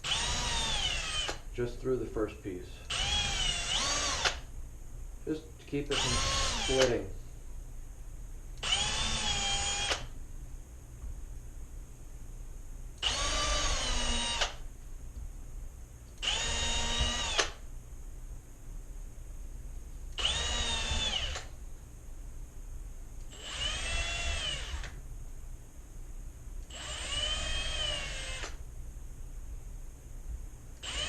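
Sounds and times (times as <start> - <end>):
power drill boring into wood: 0.0 - 1.4, 2.9 - 4.4, 5.9 - 7.0, 8.6 - 10.1, 13.0 - 14.6, 16.2 - 17.6, 20.2 - 21.5, 23.3 - 25.0, 26.7 - 28.6.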